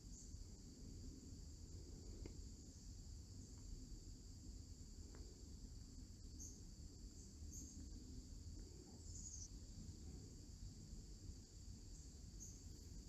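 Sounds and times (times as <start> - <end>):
insects chorus: 0.0 - 13.0.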